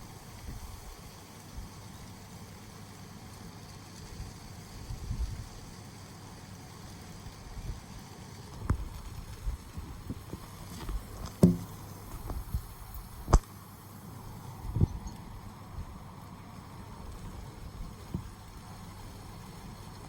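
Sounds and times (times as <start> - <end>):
wind rumbling on microphone: 0.0 - 1.8, 4.0 - 5.7, 7.2 - 13.4, 14.2 - 20.0
light rain: 0.0 - 20.0
raindrops tapping close by: 6.7 - 13.6, 16.6 - 20.0.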